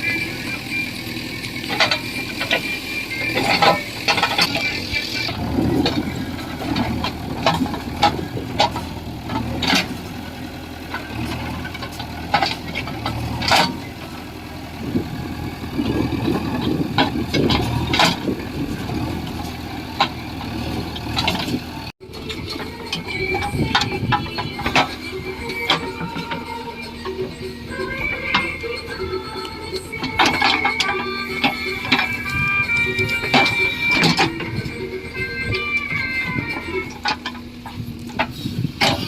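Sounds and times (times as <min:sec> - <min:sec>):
diesel engine running: 0:00.0 - 0:39.0
sharp metal clanks: 0:01.6 - 0:10.3.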